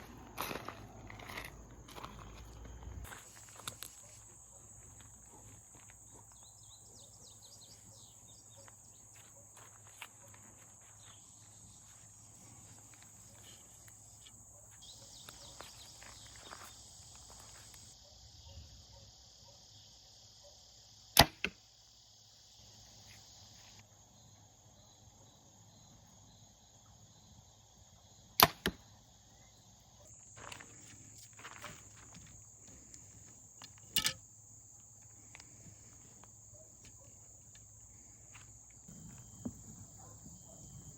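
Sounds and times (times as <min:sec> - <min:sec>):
insects buzzing: 0:00.0 - 0:40.9
bow string snapping: 0:21.2 - 0:21.6.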